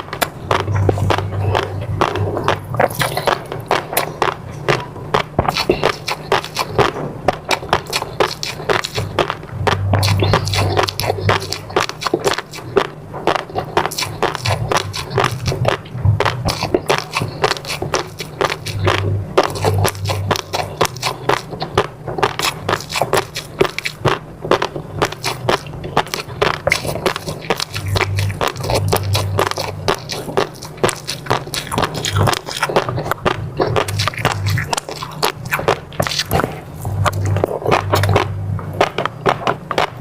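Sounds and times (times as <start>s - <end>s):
chewing food: 0.0s - 40.0s.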